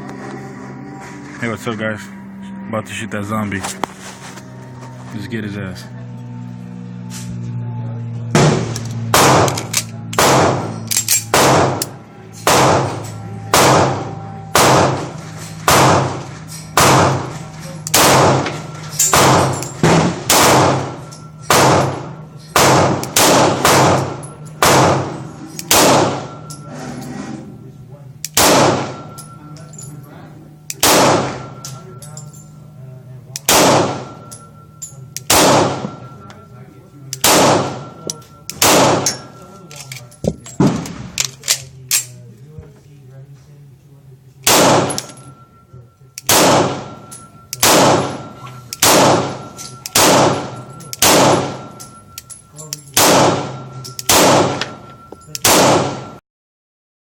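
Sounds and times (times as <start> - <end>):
gunshots: 8.4 - 26.4, 28.3 - 29.1, 30.7 - 31.6, 33.4 - 34.2, 35.2 - 36.0, 37.2 - 39.3, 44.4 - 45.1, 46.2 - 47.0, 47.6 - 51.7, 53.0 - 54.8, 55.4 - 56.2.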